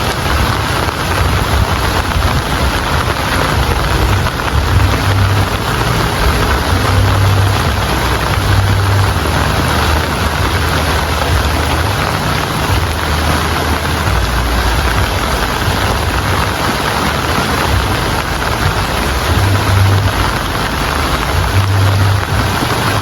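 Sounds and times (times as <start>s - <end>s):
heavy rain falling: 0.0s - 23.0s
low rumble: 0.0s - 23.0s.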